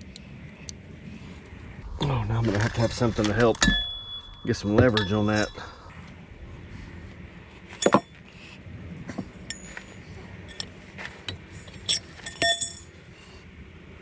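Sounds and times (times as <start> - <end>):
metal tools clinking: 7.7 - 8.2, 9.1 - 13.0.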